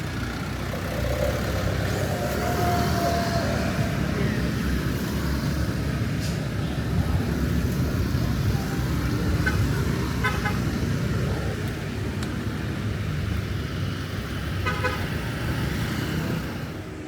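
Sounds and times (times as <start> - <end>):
car engine and road rumble: 0.0 - 17.0
car horn toots: 14.6 - 15.0.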